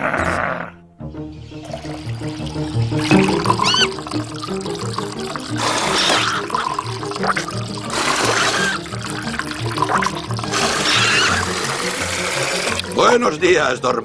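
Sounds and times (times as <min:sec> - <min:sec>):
cartoon background music: 0:00.0 - 0:14.0
short rising whistles: 0:10.6 - 0:11.6.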